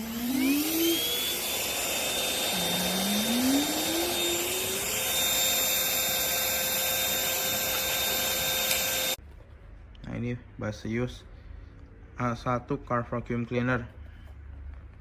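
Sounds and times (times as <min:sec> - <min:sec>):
vacuum cleaner motor whine: 0:00.0 - 0:09.2.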